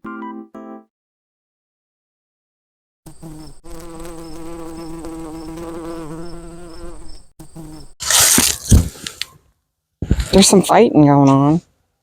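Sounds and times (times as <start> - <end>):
honeybees buzzing: 3.1 - 8.5.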